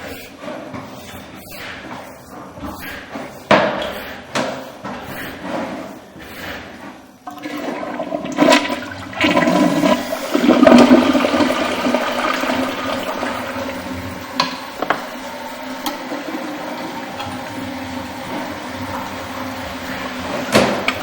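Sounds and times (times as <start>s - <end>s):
toilet flushing: 5.0s - 21.0s.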